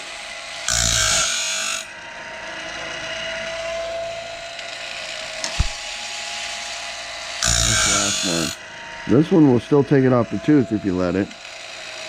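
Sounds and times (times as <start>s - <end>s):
loud grinding on blade tooth: 0.0s - 12.0s
sharpener motor hum and whine: 0.0s - 12.0s.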